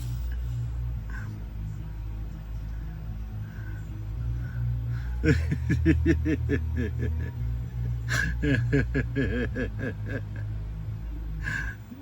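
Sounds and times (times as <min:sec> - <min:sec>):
steady low hum: 0:00.0 - 0:12.0
person laughing: 0:05.0 - 0:10.4.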